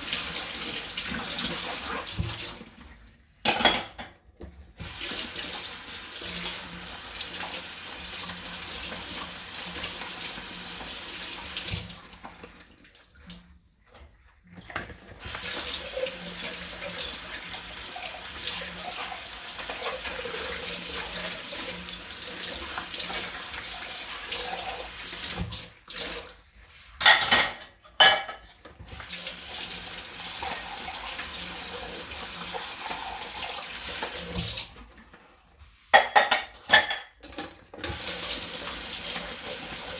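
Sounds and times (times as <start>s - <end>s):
tap water running into sink: 0.0s - 3.0s, 4.8s - 13.6s, 14.6s - 27.2s, 28.8s - 35.1s, 37.7s - 39.9s
dishes clinking: 3.5s - 4.2s, 27.0s - 28.5s, 36.0s - 37.4s.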